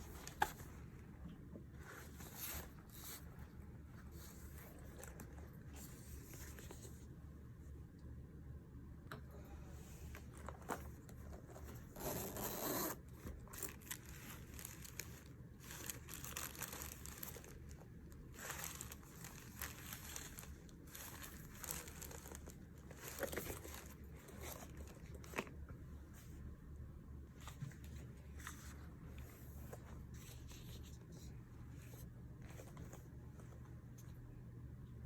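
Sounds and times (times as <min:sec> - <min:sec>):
packaging rustling and crinkling: 0:00.0 - 0:00.9, 0:10.1 - 0:25.6.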